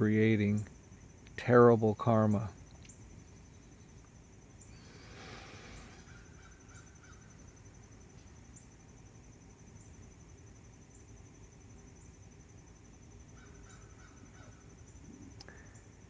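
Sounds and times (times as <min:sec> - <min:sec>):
insects trilling: 0:00.0 - 0:16.0
low hiss: 0:00.0 - 0:16.0
faint bird chirps: 0:02.5 - 0:08.8, 0:13.3 - 0:16.0.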